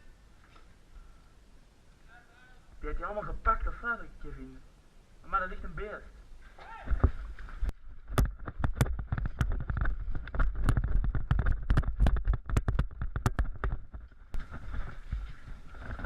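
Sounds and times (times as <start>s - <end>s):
sharp clicks and knocks: 8.1s - 14.2s.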